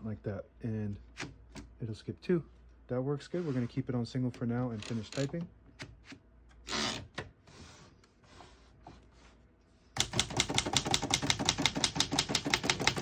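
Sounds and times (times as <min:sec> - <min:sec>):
typewriter keystrokes: 0:10.0 - 0:13.0.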